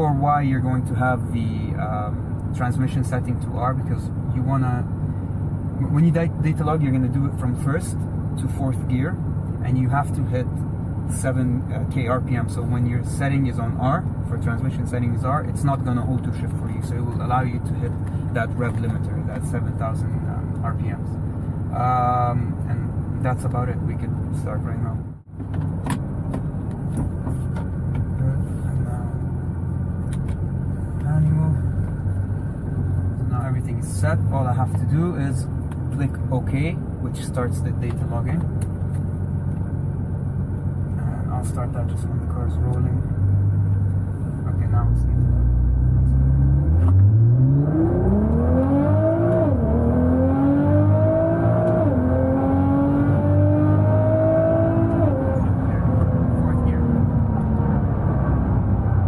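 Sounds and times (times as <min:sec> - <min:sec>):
car engine idling: 0:00.4 - 0:46.9
car engine accelerating hard: 0:26.9 - 0:59.0.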